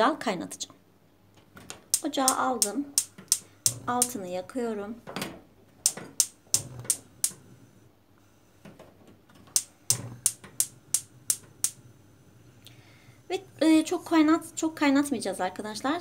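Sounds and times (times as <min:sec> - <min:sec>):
stove spark igniter clicking: 0:01.9 - 0:04.2, 0:05.8 - 0:07.5, 0:09.5 - 0:11.8.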